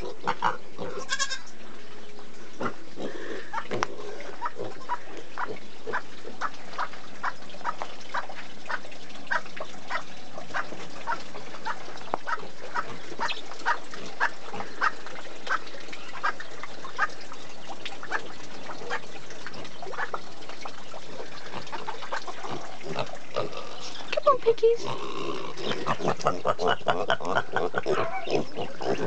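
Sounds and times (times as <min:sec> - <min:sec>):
piglets grunting: 0:00.0 - 0:01.4, 0:02.6 - 0:06.5, 0:21.2 - 0:29.0.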